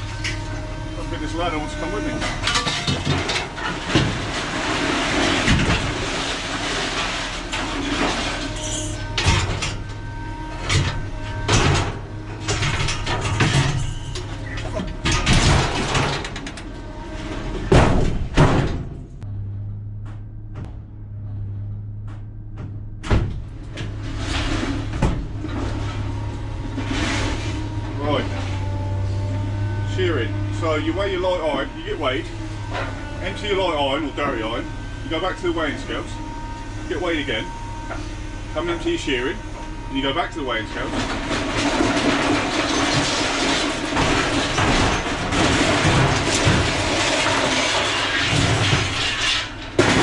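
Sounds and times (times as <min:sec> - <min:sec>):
scrap metal clanking and banging: 0:00.0 - 0:19.4, 0:20.0 - 0:50.0
steady low hum: 0:09.0 - 0:42.3.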